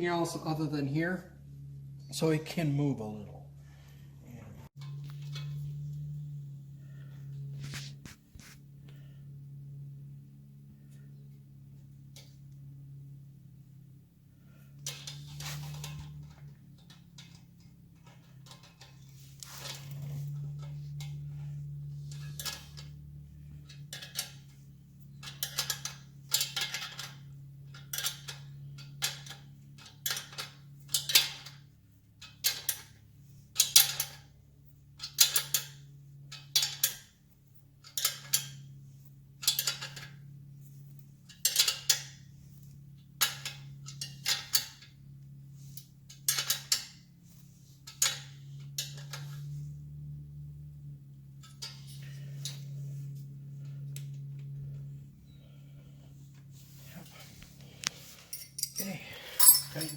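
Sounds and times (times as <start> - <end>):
steady low hum: 0.0 - 59.9
hand tools clicking on metal: 57.8 - 59.9.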